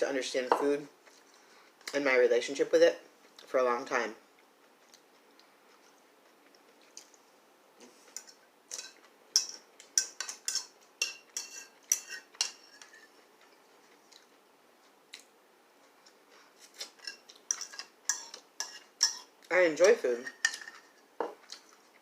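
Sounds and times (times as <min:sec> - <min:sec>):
cutlery clinking against dishes: 0:08.1 - 0:13.1, 0:16.9 - 0:19.3, 0:20.2 - 0:21.4.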